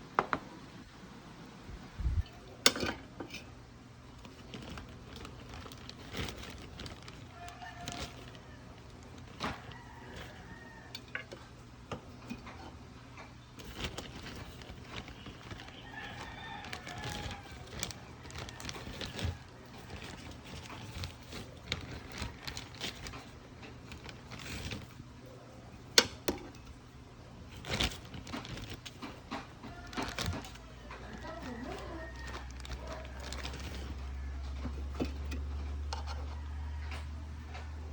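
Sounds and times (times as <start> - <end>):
distant rooster crowing: 6.1 - 11.6, 14.2 - 25.0, 27.7 - 37.9.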